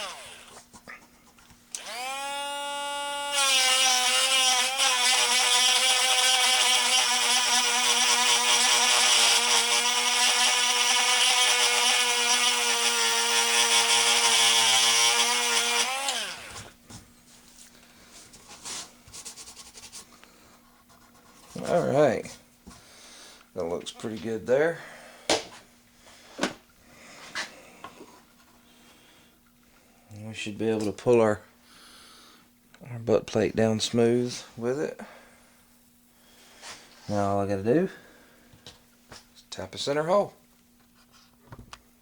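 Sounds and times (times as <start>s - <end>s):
rotary tool grinding wood: 0.0s - 0.7s, 1.8s - 16.8s.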